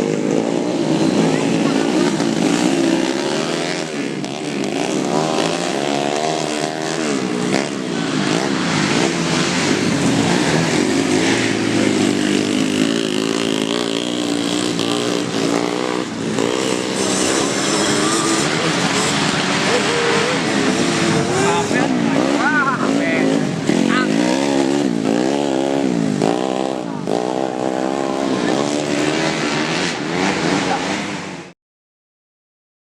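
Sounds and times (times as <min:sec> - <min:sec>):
motorcycle engines revving: 0:00.0 - 0:31.5.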